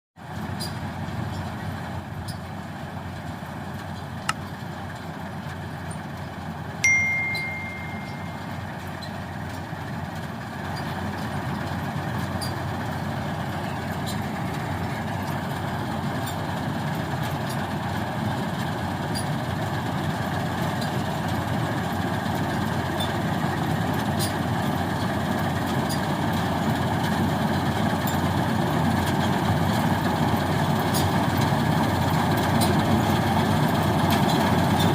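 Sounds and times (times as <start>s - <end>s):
combine harvester running: 0.2s - 34.9s
short high ringing tone: 6.8s - 8.9s.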